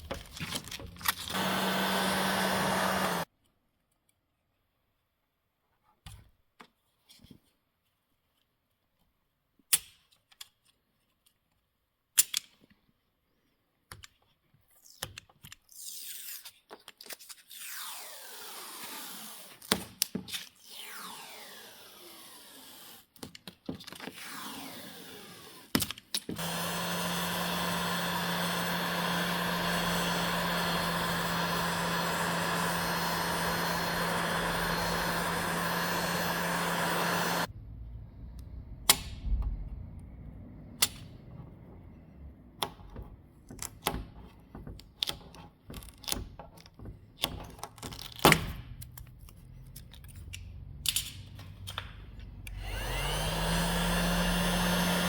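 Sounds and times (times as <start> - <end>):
power tool humming: 1.3 - 3.3, 26.4 - 37.6, 52.5 - 55.0.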